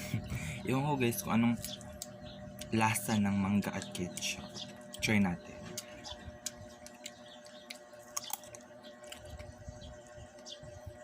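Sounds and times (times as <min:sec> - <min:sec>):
person chewing: 0:05.7 - 0:10.4.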